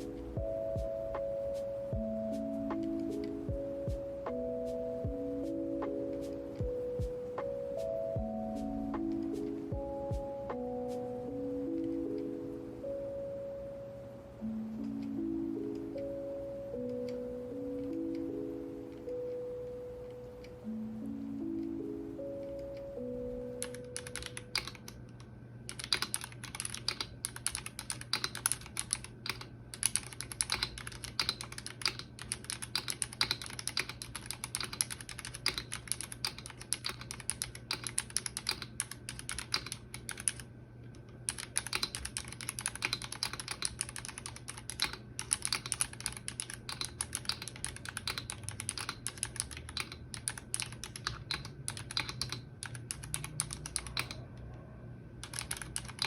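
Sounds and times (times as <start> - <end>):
mechanical keyboard typing: 21.6 - 40.5, 41.2 - 54.5, 55.2 - 56.0.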